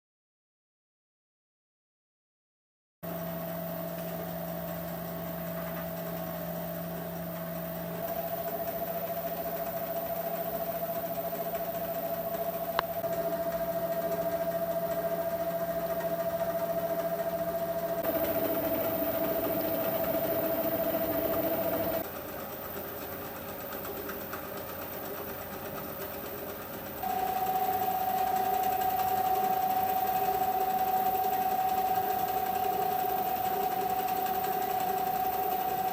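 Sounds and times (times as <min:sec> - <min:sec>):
lathe whining: 0:08.0 - 0:22.0, 0:27.0 - 0:35.9.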